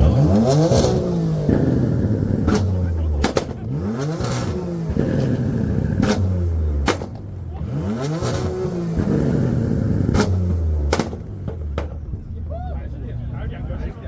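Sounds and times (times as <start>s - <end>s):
exhaust cracks and pops: 0.0s - 7.4s, 8.0s - 12.4s
sports car engine revving: 0.0s - 14.0s.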